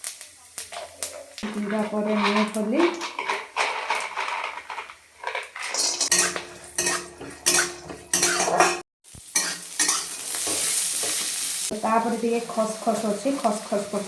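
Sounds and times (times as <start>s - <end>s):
kitchen utensils clattering: 1.5s - 8.8s
metal spoon scraping pan: 1.5s - 8.8s, 9.4s - 10.6s.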